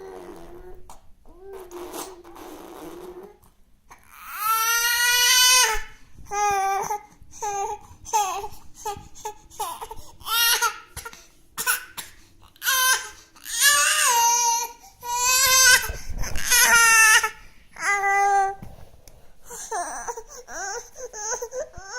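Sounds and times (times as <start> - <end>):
baby crying: 4.1 - 18.6, 19.5 - 21.9.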